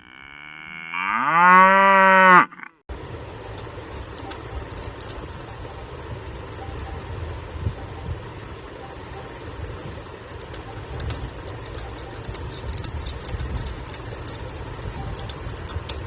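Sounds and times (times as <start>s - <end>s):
cow mooing: 0.0s - 2.8s
low rumbling background noise: 2.9s - 16.0s.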